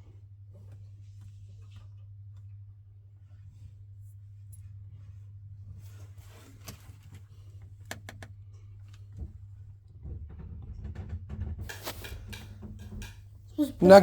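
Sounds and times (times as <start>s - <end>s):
light clicks and knocks: 10.0s - 14.0s.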